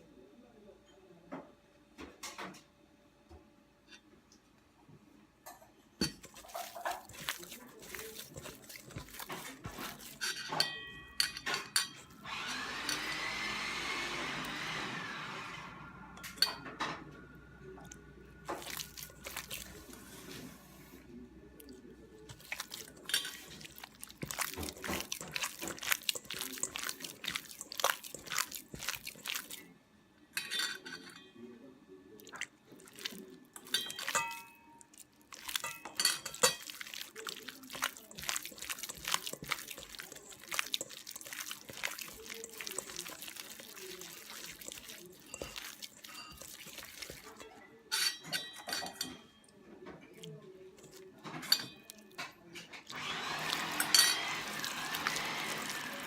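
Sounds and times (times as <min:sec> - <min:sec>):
dishes and utensils clinking: 0:05.5 - 0:12.2, 0:16.2 - 0:17.1, 0:18.4 - 0:20.4, 0:22.3 - 0:29.6, 0:30.3 - 0:31.4, 0:32.3 - 0:56.0
wet liquid sounds: 0:06.1 - 0:13.6, 0:17.8 - 0:29.7, 0:32.1 - 0:47.6, 0:50.2 - 0:56.0.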